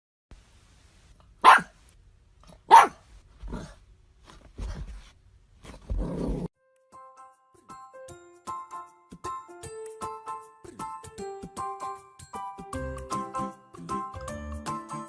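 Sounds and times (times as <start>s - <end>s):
puppy barking: 1.4s - 1.8s, 2.6s - 3.7s.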